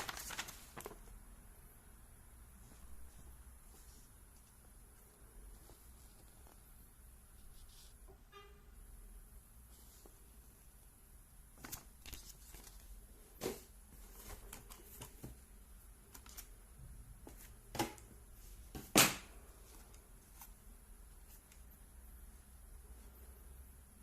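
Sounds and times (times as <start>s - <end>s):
packaging rustling: 0.0s - 1.1s.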